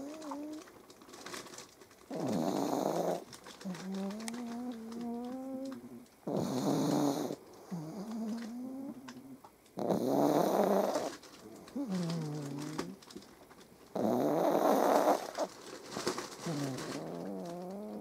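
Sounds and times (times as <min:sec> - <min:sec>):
dog snoring: 0:00.0 - 0:00.7, 0:02.1 - 0:13.0, 0:13.9 - 0:15.6, 0:16.4 - 0:18.0.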